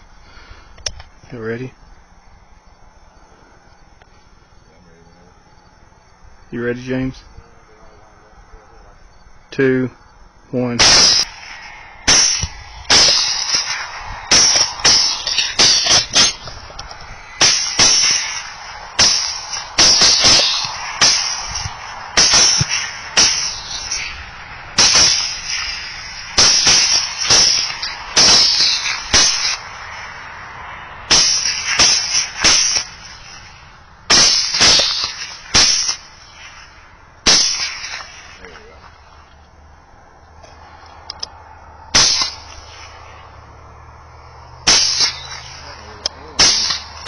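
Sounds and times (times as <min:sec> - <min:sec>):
rifle shots: 0:10.8 - 0:30.2, 0:31.1 - 0:38.7, 0:41.9 - 0:43.2, 0:44.6 - 0:47.0.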